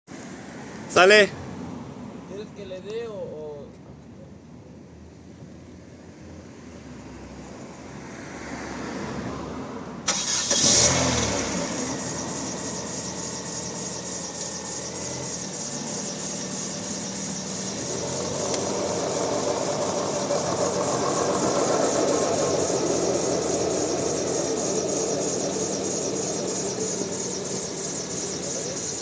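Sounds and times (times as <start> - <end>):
car engine cranking and starting: 10.1 - 29.0
broad hum: 11.8 - 29.0.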